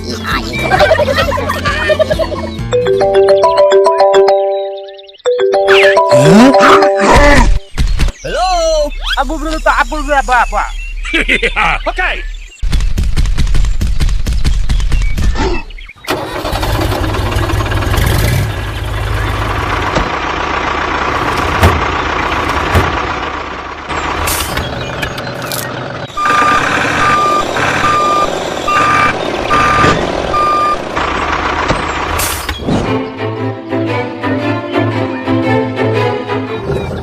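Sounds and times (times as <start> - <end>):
truck engine running: 16.0 - 34.5
reversing alarm beeping: 26.1 - 30.9.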